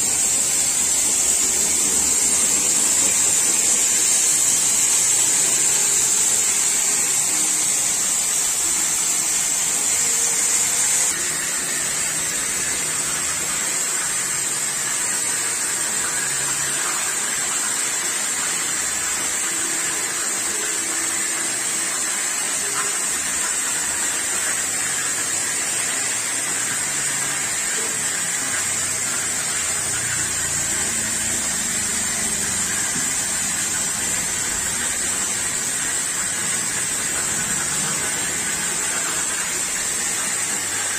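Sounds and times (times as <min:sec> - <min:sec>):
cutting torch hissing: 0:00.0 - 0:40.9.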